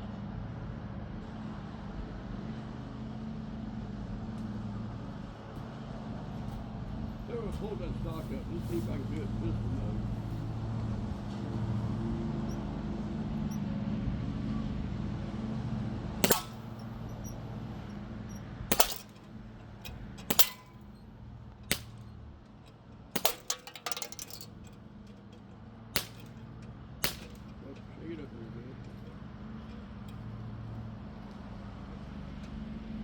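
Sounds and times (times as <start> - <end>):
metallic clang of bb on can: 16.2 - 16.8, 18.7 - 19.2, 20.3 - 20.8, 23.2 - 24.5, 26.0 - 26.3
air rifle shots cracking: 16.2 - 17.2, 18.7 - 19.2, 19.9 - 20.9, 21.7 - 22.0, 23.2 - 24.5, 26.0 - 26.4, 27.0 - 27.6
steady low hum: 16.2 - 24.8.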